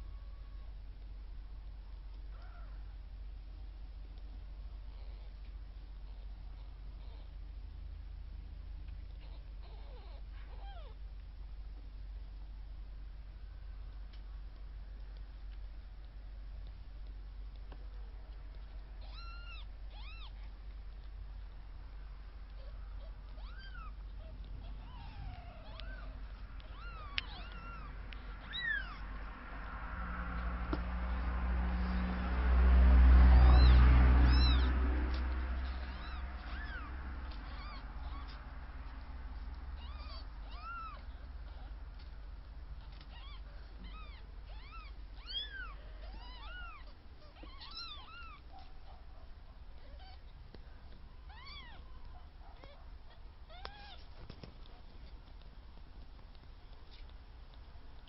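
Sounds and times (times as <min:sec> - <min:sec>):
low rumble: 0:00.0 - 0:52.5
newborn kittens mewing: 0:02.1 - 0:03.2, 0:04.2 - 0:12.5, 0:14.1 - 0:58.0.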